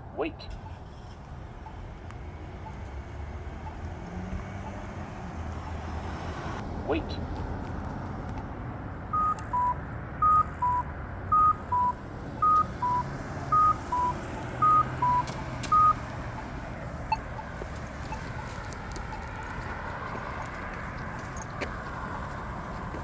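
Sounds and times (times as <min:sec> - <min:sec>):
pedestrian signal two-tone beeps: 0:09.1 - 0:16.5, 0:17.1 - 0:17.5.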